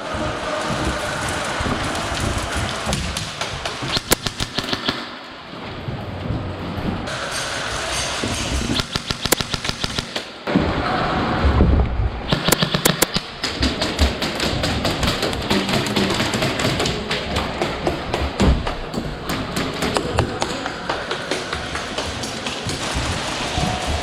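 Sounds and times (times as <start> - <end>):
airsoft guns firing in bursts: 2.7 - 5.2, 8.8 - 10.4, 12.3 - 18.3.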